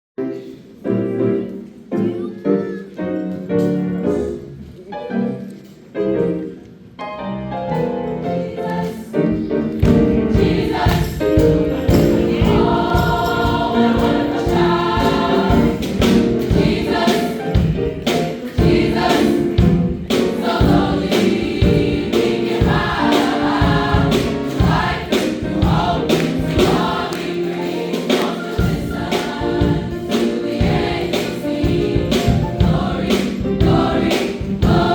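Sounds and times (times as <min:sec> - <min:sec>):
choir singing: 0:08.1 - 0:34.9
steady beat: 0:09.8 - 0:34.9.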